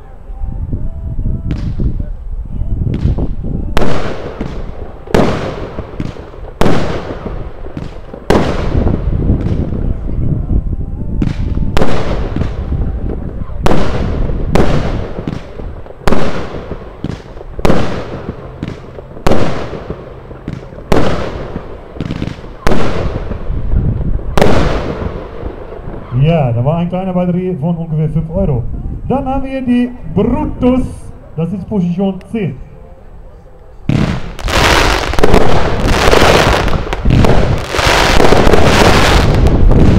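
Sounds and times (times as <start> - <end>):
firework bangs with rumble: 2.9 - 10.1, 11.2 - 26.1, 33.9 - 39.9.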